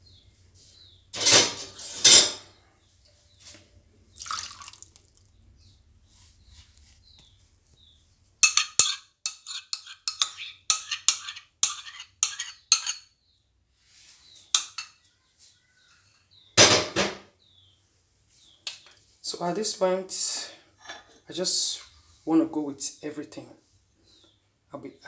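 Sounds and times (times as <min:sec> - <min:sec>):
metal whisk clinking against bowl: 0:08.4 - 0:13.1, 0:14.6 - 0:15.0.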